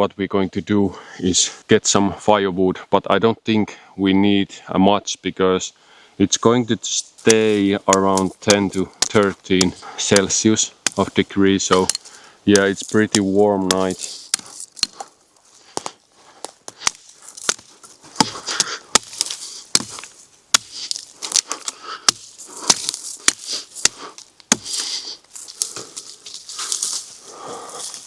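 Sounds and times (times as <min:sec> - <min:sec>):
dry wood crunching and rustling: 0:06.9 - 0:28.0
dry twigs snapping: 0:07.2 - 0:28.0.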